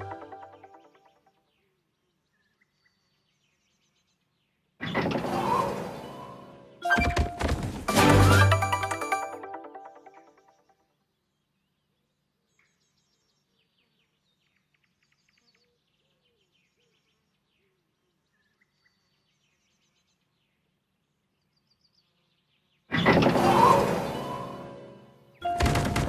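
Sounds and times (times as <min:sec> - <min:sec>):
faint bird chirps: 0:11.2 - 0:20.6.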